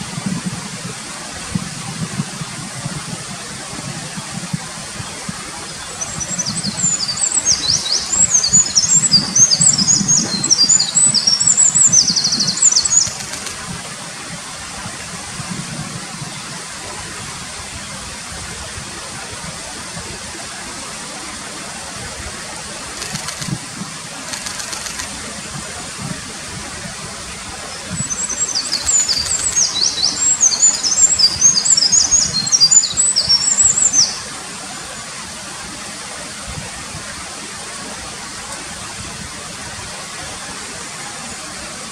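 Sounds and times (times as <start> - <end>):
mountain stream rushing: 0.0 - 41.9
wren singing trills: 6.0 - 13.5, 27.9 - 34.2.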